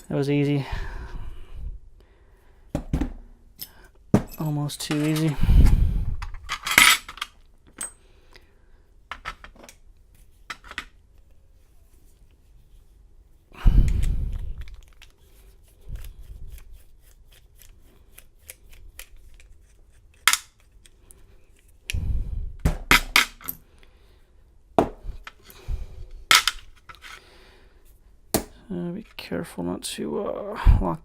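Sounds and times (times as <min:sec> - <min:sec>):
heavy thump: 0:02.7 - 0:03.3, 0:22.6 - 0:23.0, 0:24.8 - 0:25.1.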